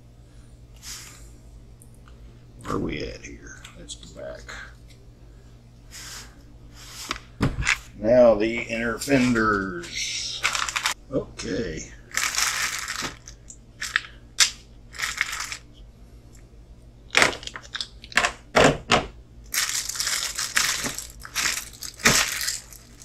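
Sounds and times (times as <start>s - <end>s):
packaging rustling: 10.4s - 11.0s, 12.1s - 14.2s, 14.9s - 15.6s, 19.5s - 23.0s.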